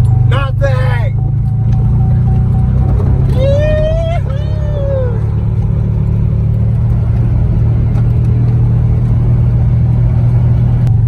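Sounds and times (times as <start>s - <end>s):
car engine droning: 0.0s - 11.0s.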